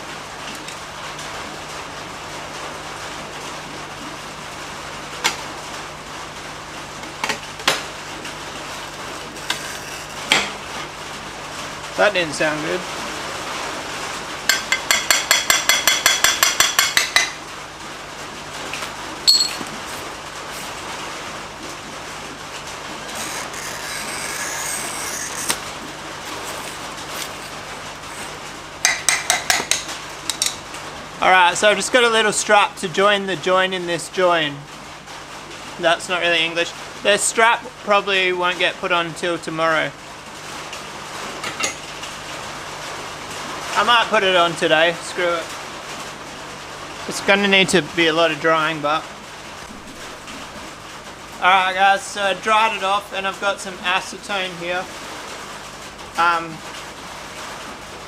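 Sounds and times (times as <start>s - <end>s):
glass cutter scoring glass: 9.4s - 10.6s, 23.0s - 25.6s, 26.3s - 30.6s
sharp taps on glass: 14.5s - 17.4s
rain hissing: 17.4s - 28.9s.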